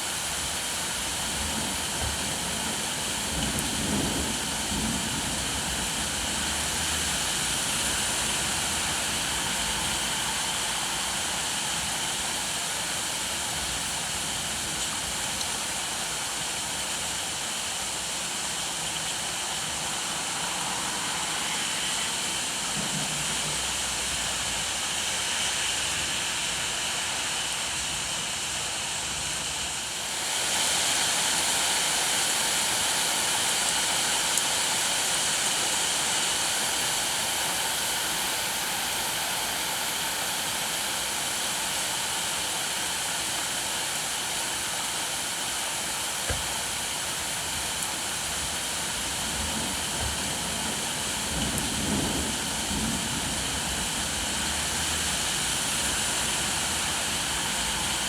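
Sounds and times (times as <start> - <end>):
heavy rain: 0.0 - 58.0.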